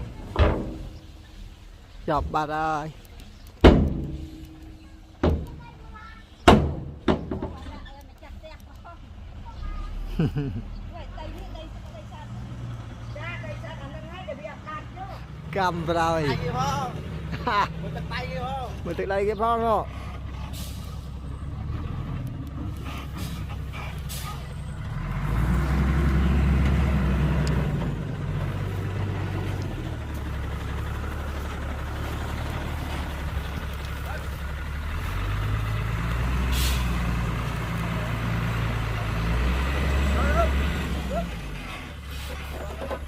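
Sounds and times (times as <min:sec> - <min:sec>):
heavy diesel engine running: 0:00.0 - 0:10.1, 0:11.0 - 0:43.0.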